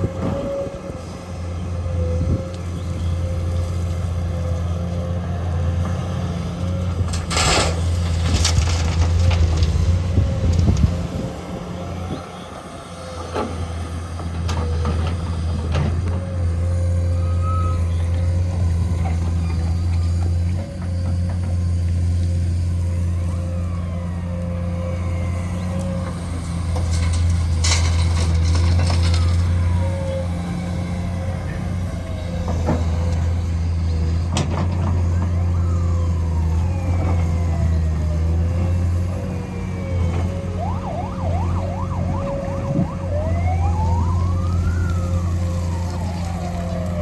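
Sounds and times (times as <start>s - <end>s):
heavy machine engine droning: 0.0s - 47.0s
siren wailing and yelping: 35.0s - 38.3s, 39.3s - 47.0s.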